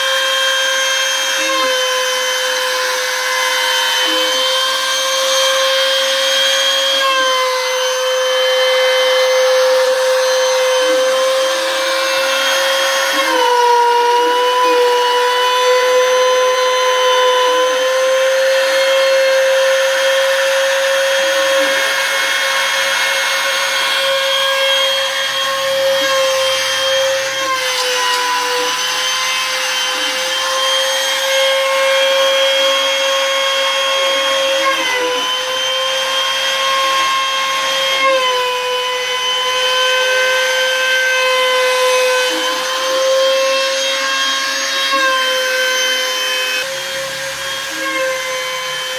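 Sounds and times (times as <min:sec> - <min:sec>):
router spindle milling wood: 0:00.0 - 0:48.9.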